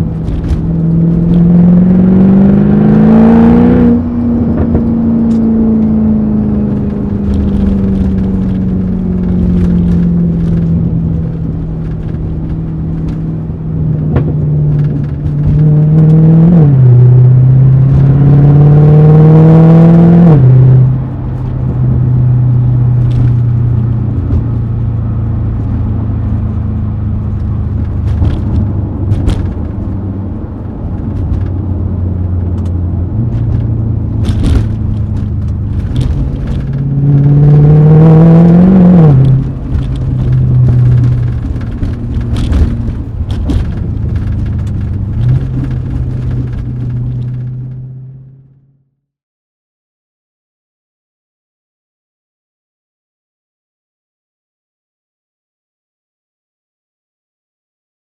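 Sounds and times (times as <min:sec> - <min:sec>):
car engine revving through gears: 0:00.0 - 0:48.8
exhaust crackles: 0:20.4 - 0:48.8.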